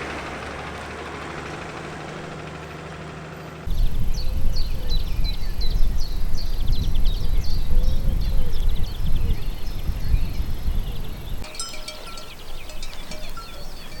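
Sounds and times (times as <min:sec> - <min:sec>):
songbird chirping: 0:03.4 - 0:14.0
wind rumbling on microphone: 0:03.7 - 0:14.0.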